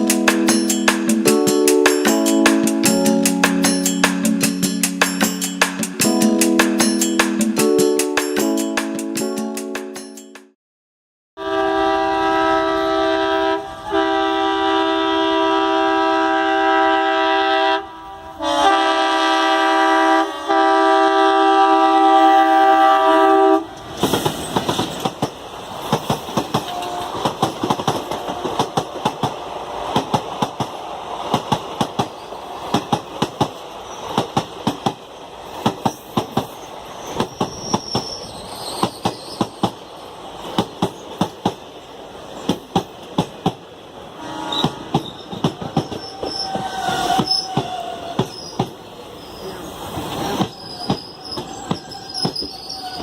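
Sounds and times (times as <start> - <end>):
train horn blast: 11.4 - 23.8, 26.6 - 27.3, 44.2 - 45.0
train wheels clattering: 23.8 - 39.8, 40.4 - 41.7, 42.3 - 43.6, 44.5 - 48.9, 49.9 - 53.0.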